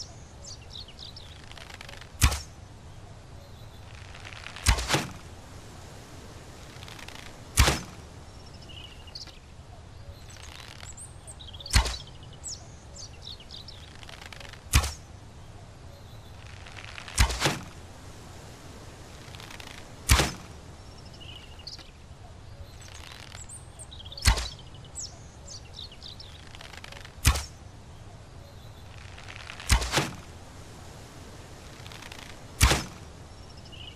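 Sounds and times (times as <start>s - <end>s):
arrow swish: 1.9s - 2.6s, 4.3s - 5.3s, 6.9s - 8.0s, 11.7s - 12.1s, 14.3s - 15.1s, 16.9s - 17.8s, 19.4s - 20.6s, 24.2s - 24.6s, 26.7s - 27.6s, 29.3s - 30.3s, 32.0s - 33.0s
arrow thwacks: 2.2s - 2.6s, 4.5s - 5.3s, 7.5s - 8.0s, 11.7s - 12.1s, 14.7s - 15.1s, 17.0s - 17.8s, 20.0s - 20.5s, 24.2s - 24.6s, 26.8s - 27.6s, 29.6s - 30.3s, 32.6s - 33.0s.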